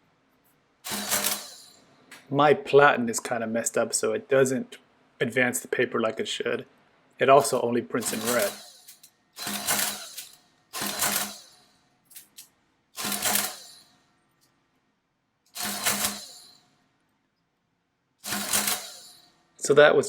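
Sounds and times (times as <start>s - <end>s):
adding machine whirr and clatter: 0.8s - 1.9s, 7.4s - 14.0s, 15.5s - 16.8s, 18.2s - 19.7s.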